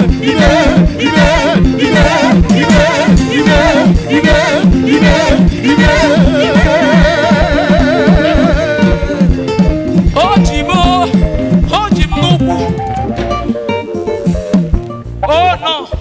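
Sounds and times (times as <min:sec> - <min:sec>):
person singing ornamented vocal: 0:00.0 - 0:09.7
music with fast steady beat: 0:00.0 - 0:16.0.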